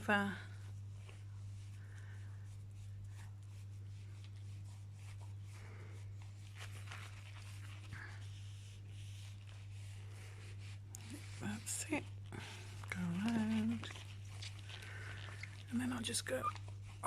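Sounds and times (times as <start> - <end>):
cloth rubbing on plastic: 0.0 - 17.0
steady low hum: 0.0 - 17.0.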